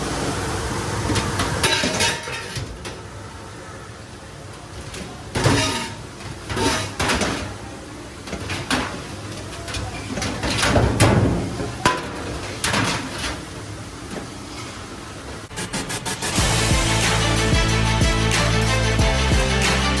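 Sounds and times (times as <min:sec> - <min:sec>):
metal pots and pans clanking: 0:01.2 - 0:03.0, 0:04.8 - 0:07.6, 0:08.3 - 0:13.6.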